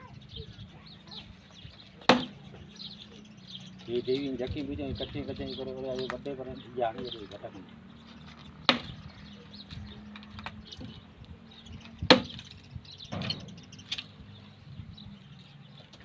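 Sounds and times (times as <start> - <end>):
axe chopping firewood: 2.0 - 2.4, 8.6 - 9.0, 12.1 - 12.4.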